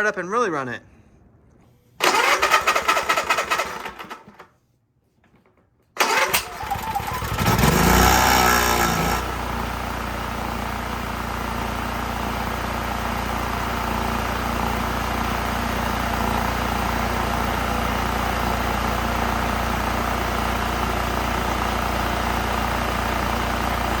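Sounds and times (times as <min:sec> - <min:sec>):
generator engine running: 0:02.0 - 0:04.5, 0:06.0 - 0:24.0.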